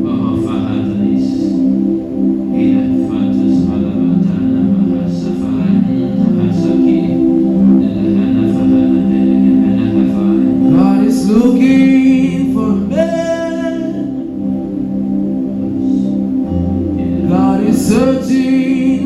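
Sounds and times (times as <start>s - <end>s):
person singing wordless lines: 0.0s - 19.0s
sustained chords: 0.0s - 19.0s.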